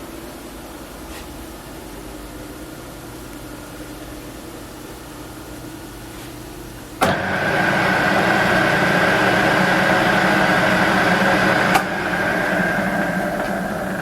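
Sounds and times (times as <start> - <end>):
lathe switch click: 7.0 - 7.4, 10.2 - 12.0
lathe motor whine: 7.0 - 14.0.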